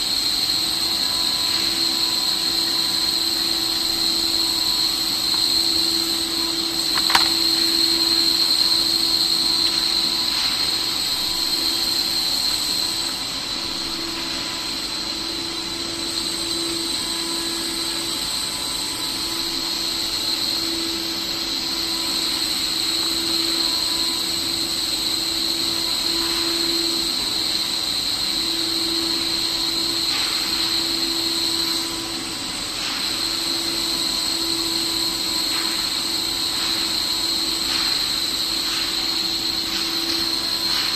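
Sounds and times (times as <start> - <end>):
router spindle whine: 0.0 - 40.9
bit cutting panel hiss: 1.7 - 13.0.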